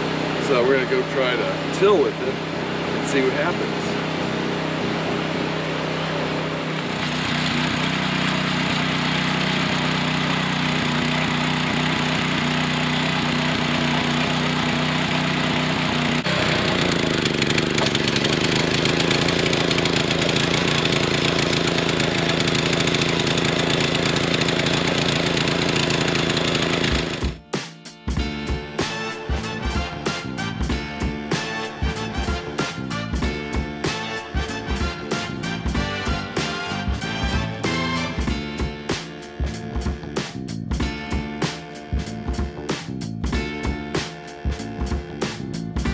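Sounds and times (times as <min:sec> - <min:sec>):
small engine running: 0:00.0 - 0:45.9.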